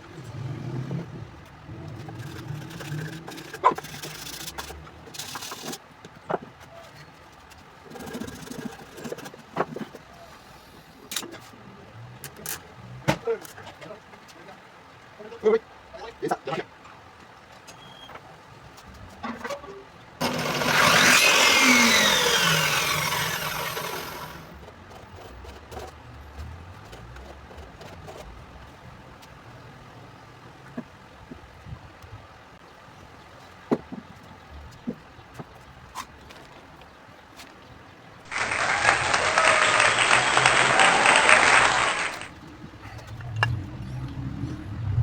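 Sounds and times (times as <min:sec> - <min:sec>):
motor rising and falling in pitch: 0:20.2 - 0:24.6, 0:38.3 - 0:45.0
applause: 0:38.3 - 0:42.3.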